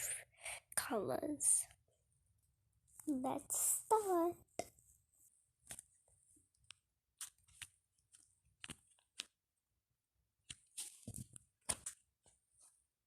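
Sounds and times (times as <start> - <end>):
faint sharp clicks and taps: 5.6 - 9.4.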